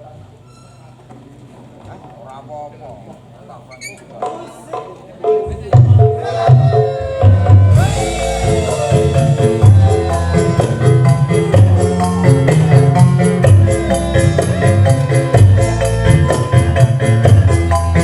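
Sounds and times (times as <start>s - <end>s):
live band playing: 4.2s - 18.0s.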